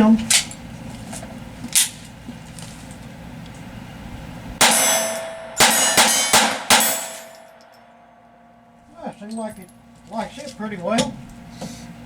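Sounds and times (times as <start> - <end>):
pistol shots: 4.6 - 7.6.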